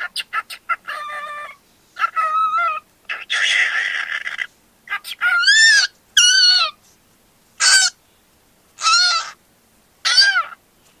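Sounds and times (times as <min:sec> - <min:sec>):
cockatiel chirping calls: 0:00.0 - 0:06.8, 0:07.6 - 0:08.0, 0:08.8 - 0:09.4, 0:10.0 - 0:10.6.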